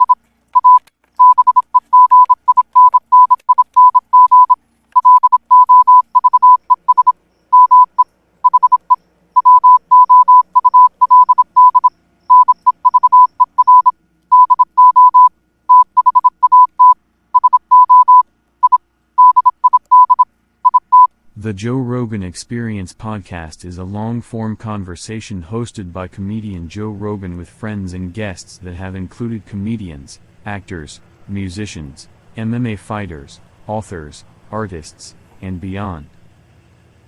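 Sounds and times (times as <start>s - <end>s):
electronic beeps like morse code: 0.0s - 21.1s.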